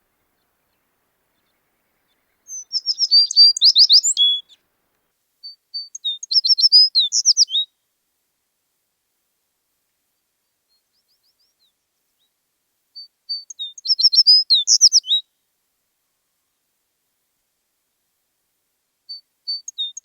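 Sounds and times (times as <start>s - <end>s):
sparrow singing: 0.3s - 4.6s, 5.5s - 7.7s, 13.0s - 15.2s, 19.1s - 20.0s.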